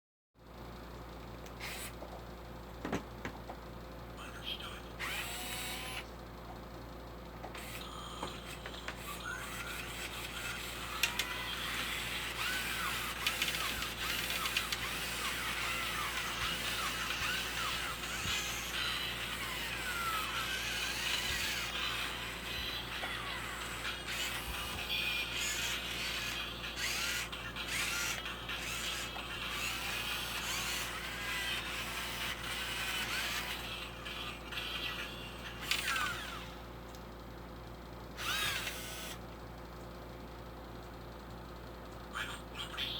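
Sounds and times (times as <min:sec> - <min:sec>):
toy robot gear motors whirring: 0:01.6 - 0:02.0, 0:05.0 - 0:06.0, 0:07.5 - 0:36.7, 0:38.2 - 0:39.2
plastic gearboxes creaking and clicking: 0:12.5 - 0:15.4.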